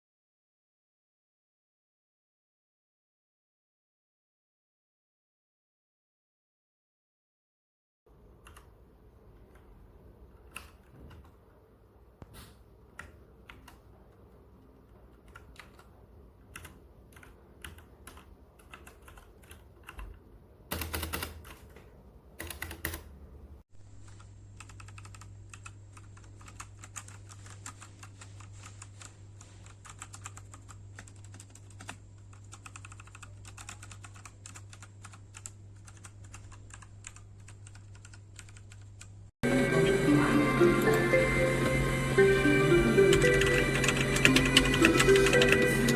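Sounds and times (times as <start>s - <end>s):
mechanical keyboard typing: 8.4s - 8.7s, 15.1s - 21.8s, 22.4s - 23.1s, 24.0s - 39.2s, 43.1s - 45.9s.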